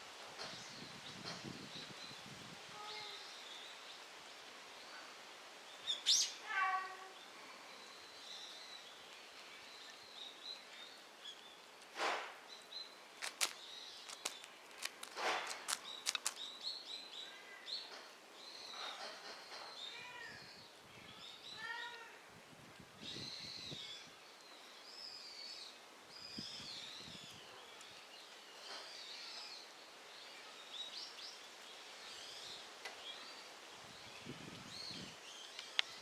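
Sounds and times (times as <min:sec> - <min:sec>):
rustling: 0:13.0 - 0:16.6
sharp snapping clicks: 0:13.2 - 0:16.4.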